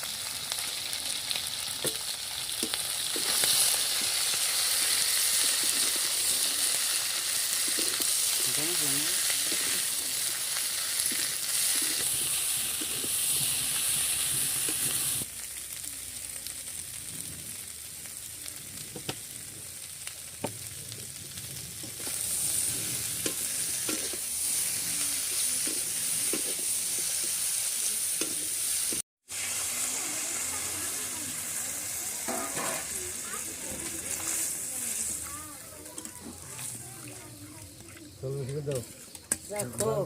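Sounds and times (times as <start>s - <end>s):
curry sizzling in a pan: 0.0s - 40.0s
spoon knocking and scraping pan: 32.3s - 32.9s.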